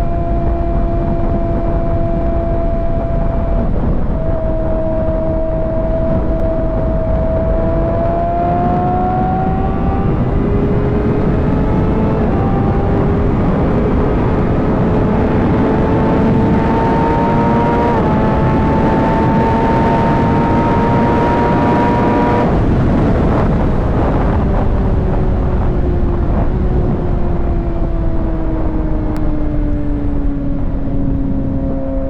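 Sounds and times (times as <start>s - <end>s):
motorcycle engine revving: 0.0s - 32.0s
wind rush: 0.0s - 32.0s.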